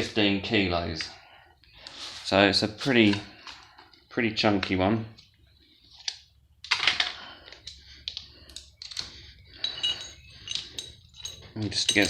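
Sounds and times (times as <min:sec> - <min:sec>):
steel bolts clinking: 0:08.6 - 0:12.0.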